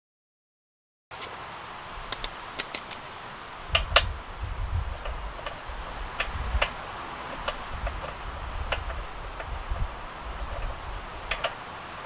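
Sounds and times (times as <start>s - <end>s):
metallic clicks of hand tools: 2.1s - 3.2s
wind rumble on microphone: 3.6s - 12.0s.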